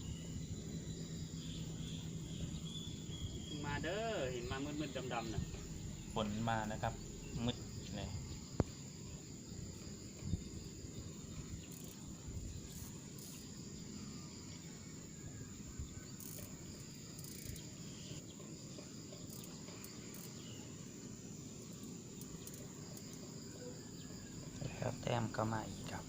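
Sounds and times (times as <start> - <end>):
low rumbling noise: 0.0 - 11.6
insects chirring: 0.0 - 26.0.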